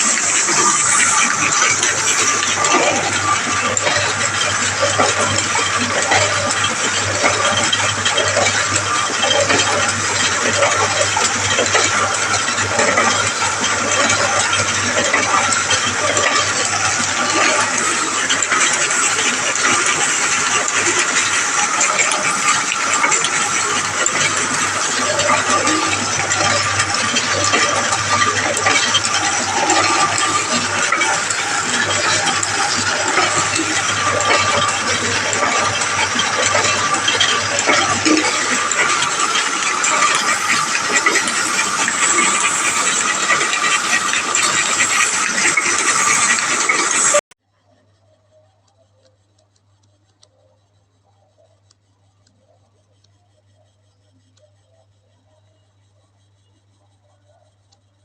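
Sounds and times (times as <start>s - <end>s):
printing press clatter: 0.0s - 47.3s.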